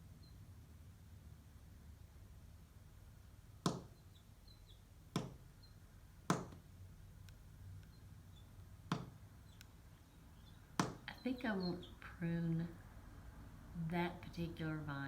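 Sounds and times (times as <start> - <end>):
bird pecking at window glass: 3.6 - 6.7, 7.9 - 9.7, 10.4 - 11.1.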